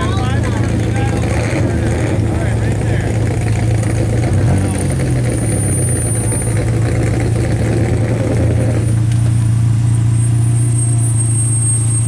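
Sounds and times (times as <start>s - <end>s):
rough mechanical noise: 0.0s - 9.5s
car engine idling: 0.0s - 12.0s.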